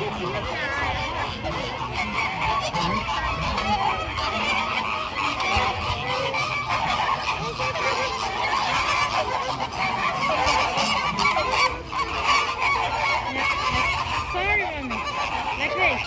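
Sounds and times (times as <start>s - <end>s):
flamingos honking: 0.0s - 16.0s.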